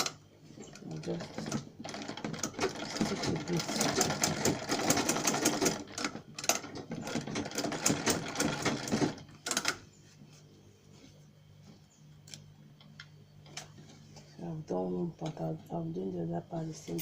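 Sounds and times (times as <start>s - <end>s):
low steady hum: 0.0s - 17.0s
sewing machine stitching: 0.8s - 9.8s.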